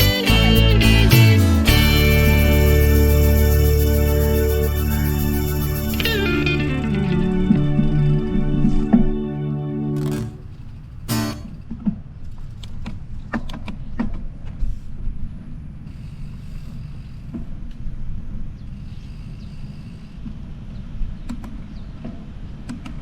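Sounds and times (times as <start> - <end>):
guitar song: 0.0 - 10.5, 11.1 - 11.6.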